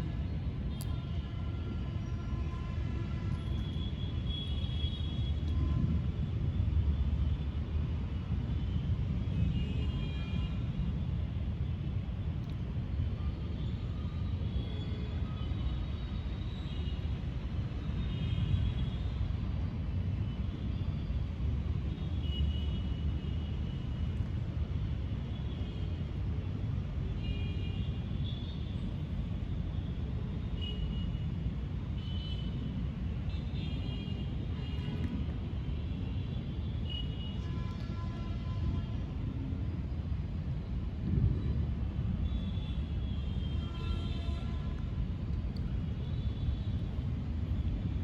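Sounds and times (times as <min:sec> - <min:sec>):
thunderstorm rumble: 0:41.0 - 0:42.2.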